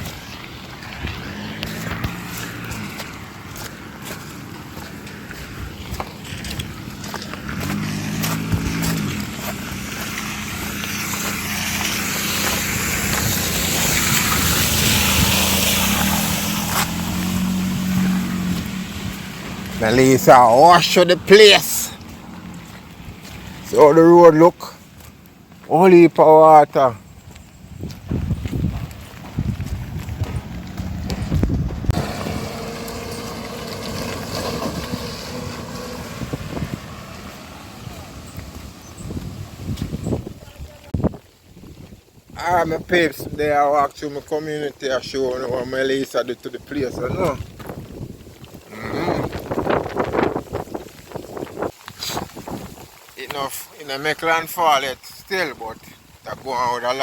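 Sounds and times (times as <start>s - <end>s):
strong wind gusting: 10.5s - 21.7s, 27.7s - 43.5s, 46.8s - 53.0s.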